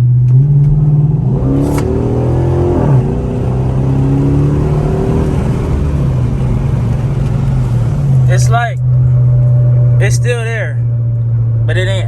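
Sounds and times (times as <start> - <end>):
car exhaust under throttle: 0.0 - 12.0.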